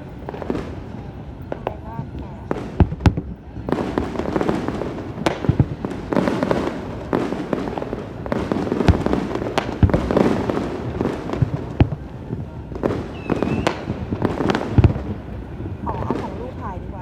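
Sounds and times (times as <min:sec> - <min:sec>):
dense din of fireworks: 0:00.0 - 0:17.0
fireworks bangs: 0:00.0 - 0:17.0.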